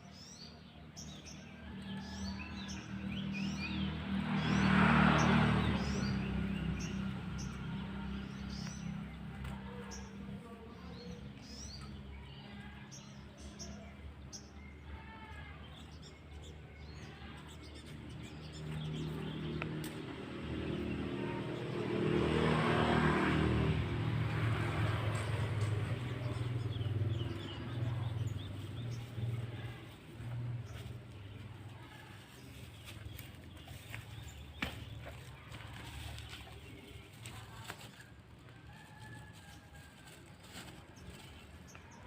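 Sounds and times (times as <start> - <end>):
vehicle engine passing: 1.6 - 13.5, 17.1 - 42.0
small birds chirping: 25.1 - 38.2.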